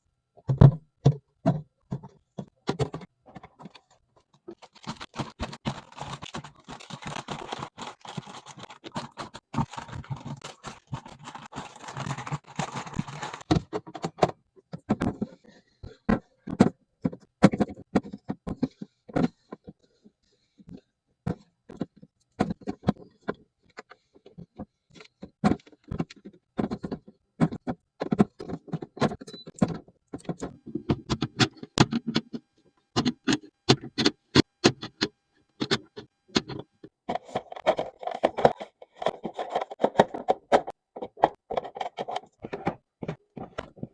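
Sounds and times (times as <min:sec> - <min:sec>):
clicks taps and knocks of containers: 0:00.4 - 0:43.9.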